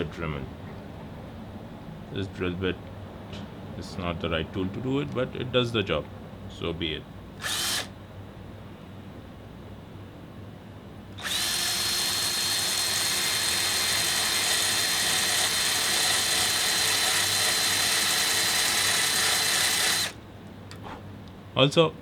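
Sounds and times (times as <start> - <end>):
drill bit grinding metal: 7.4 - 7.9, 11.2 - 20.2
electric drill whining: 7.4 - 7.9, 11.2 - 20.2.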